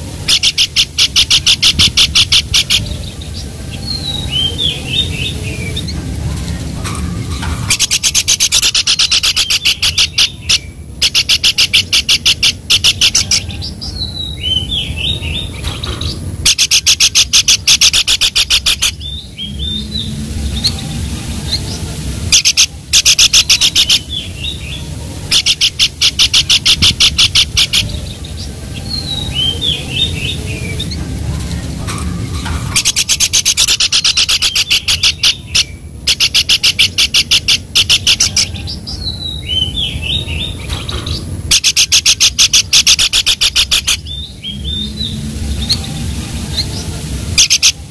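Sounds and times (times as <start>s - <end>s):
bird trilling: 0.2s - 6.0s, 7.3s - 20.8s, 22.3s - 31.0s, 32.2s - 45.9s
bird chirps: 7.3s - 20.8s, 21.5s - 31.0s, 32.3s - 46.8s.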